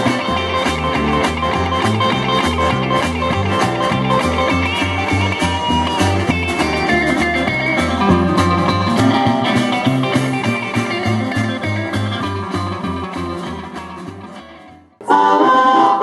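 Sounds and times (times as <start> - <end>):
rock and roll band music: 0.0 - 15.5.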